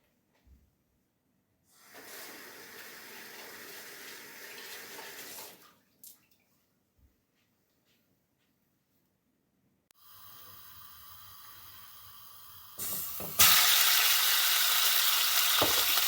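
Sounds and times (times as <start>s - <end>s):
water running: 1.8s - 6.4s, 10.2s - 16.0s.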